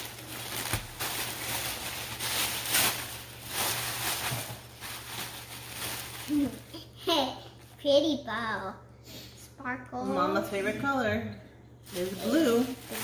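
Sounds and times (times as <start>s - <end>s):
paper rustling and crinkling: 0.0s - 6.7s, 11.9s - 13.0s.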